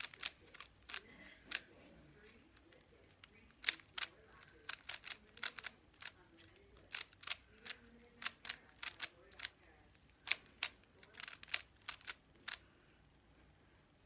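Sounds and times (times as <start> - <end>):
puzzle cube layers clicking: 3.2 - 6.2, 6.8 - 9.6, 10.2 - 12.6.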